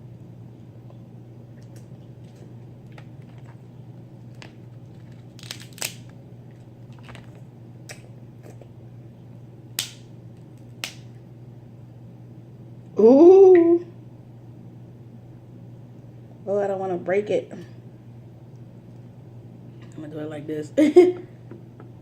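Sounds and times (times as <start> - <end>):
crab shells cracking: 4.3 - 6.2, 9.8 - 11.1.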